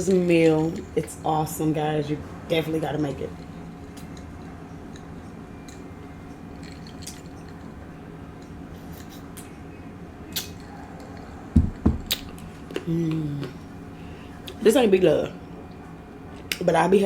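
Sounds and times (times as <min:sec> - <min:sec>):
steady low hum: 0:00.0 - 0:17.0
small eating clicks: 0:03.0 - 0:09.6
wet mouth sounds: 0:10.3 - 0:10.6.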